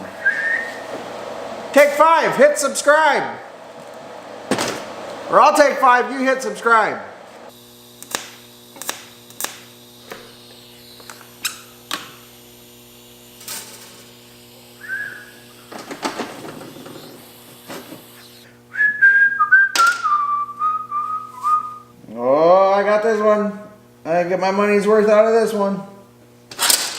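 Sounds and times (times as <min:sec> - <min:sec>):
steady hum: 0:00.0 - 0:26.4
man whistling a tune: 0:00.2 - 0:00.8, 0:14.8 - 0:15.5, 0:18.7 - 0:21.9.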